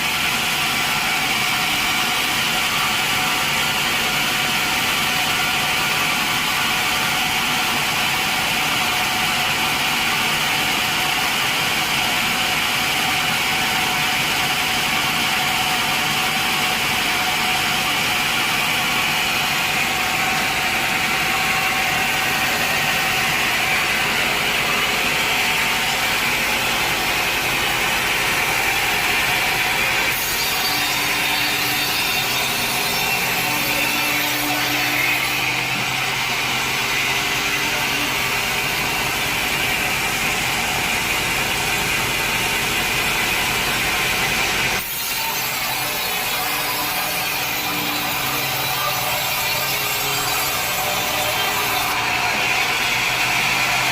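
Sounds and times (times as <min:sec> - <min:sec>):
sawmill saw cutting log: 0:00.0 - 0:53.9.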